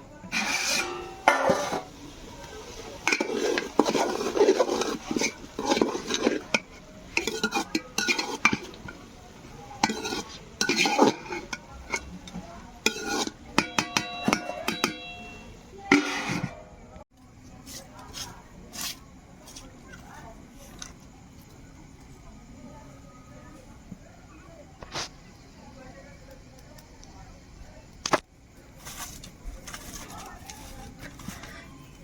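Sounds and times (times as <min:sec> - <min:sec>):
spoon stirring and scraping in pot: 0:00.2 - 0:16.7, 0:17.4 - 0:21.5, 0:28.7 - 0:32.0.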